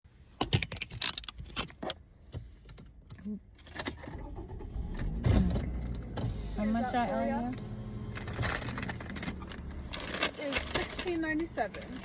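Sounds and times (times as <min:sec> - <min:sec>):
idling car hum: 0:04.2 - 0:12.0.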